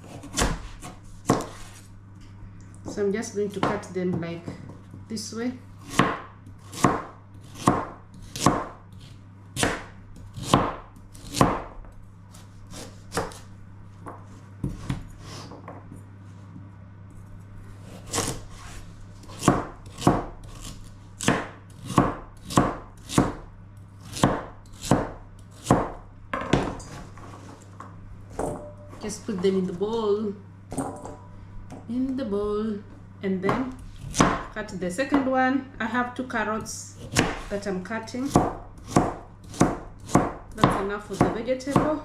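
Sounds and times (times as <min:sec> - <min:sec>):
knife chopping on cutting board: 0:00.0 - 0:01.8, 0:05.8 - 0:08.8, 0:09.6 - 0:13.5, 0:17.8 - 0:23.4, 0:24.0 - 0:26.8, 0:33.5 - 0:34.5, 0:37.0 - 0:37.5, 0:38.3 - 0:42.0.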